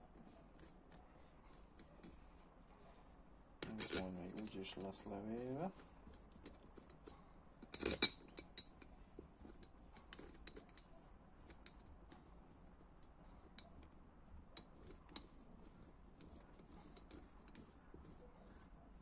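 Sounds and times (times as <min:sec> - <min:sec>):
metal parts and tools clinking: 0:03.6 - 0:08.8.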